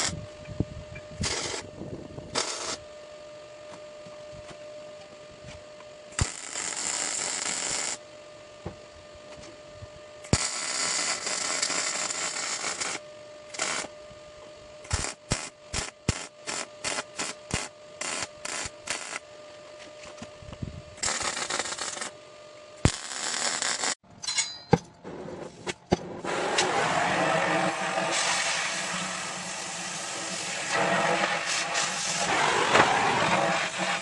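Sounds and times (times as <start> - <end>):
steady low hum: 0.0 - 26.8
electric arc crackling hiss: 1.2 - 1.7, 2.3 - 2.8, 6.1 - 8.0, 10.3 - 13.9, 14.8 - 19.3, 21.0 - 22.2, 22.8 - 24.0, 26.2 - 34.0
short arc bursts: 1.2 - 1.7, 2.3 - 2.8, 6.1 - 8.1, 10.2 - 13.9, 14.8 - 19.3, 21.0 - 22.2, 22.8 - 24.0.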